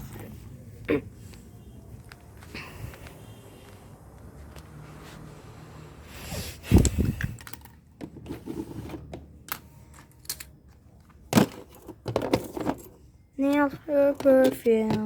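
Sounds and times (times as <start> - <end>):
fidget toys knocking and clicking: 13.4 - 15.0.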